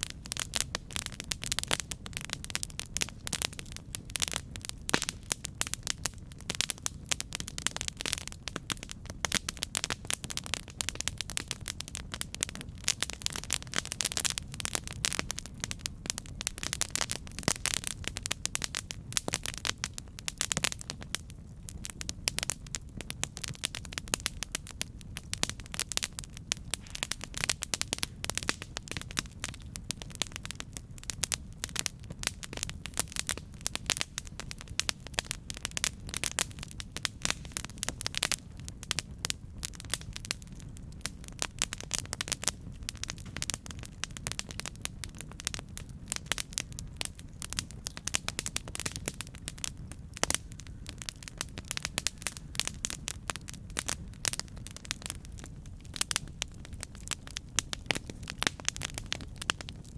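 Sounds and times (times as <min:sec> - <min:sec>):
campfire pops and snaps: 0:00.0 - 0:59.9
low rumble of burning fire: 0:00.0 - 0:59.9.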